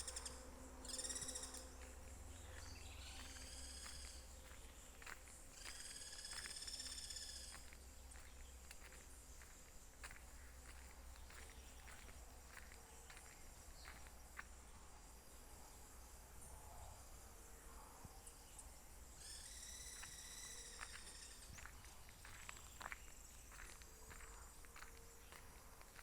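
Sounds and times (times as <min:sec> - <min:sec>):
wildlife chirps: 0:00.0 - 0:14.1, 0:18.2 - 0:26.0
footstep-like crunches: 0:01.7 - 0:14.2.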